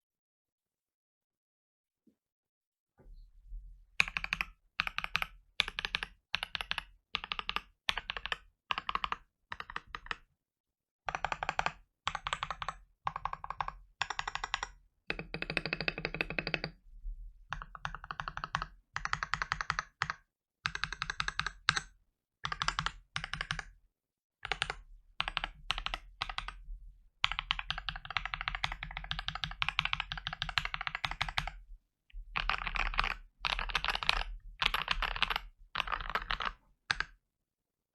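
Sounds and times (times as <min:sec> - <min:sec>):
typing on mechanical keyboard: 0:04.0 - 0:10.3, 0:11.1 - 0:16.8, 0:17.5 - 0:23.8, 0:24.4 - 0:26.6, 0:27.2 - 0:31.6, 0:32.3 - 0:37.2.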